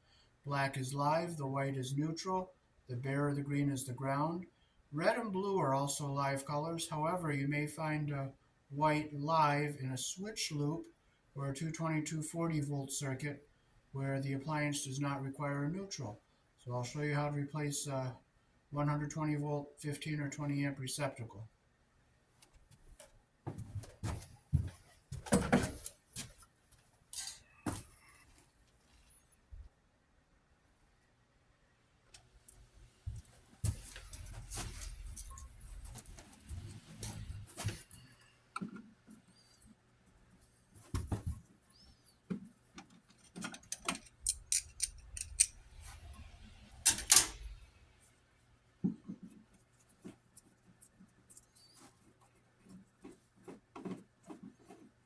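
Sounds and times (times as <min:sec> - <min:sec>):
handling knocks and clicks: 0:22.4 - 0:26.4, 0:42.3 - 0:45.6
screwdriver clicking and scraping: 0:42.8 - 0:45.6.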